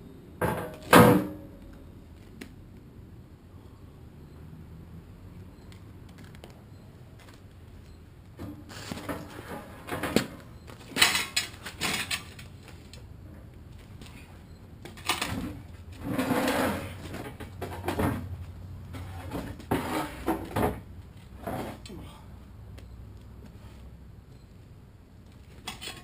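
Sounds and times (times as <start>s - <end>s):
steel pieces clanking: 10.9s - 12.5s, 25.6s - 26.0s.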